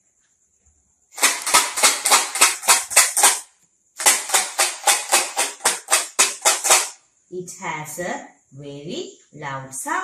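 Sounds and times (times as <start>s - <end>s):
shaker rattling: 0.4s - 7.0s.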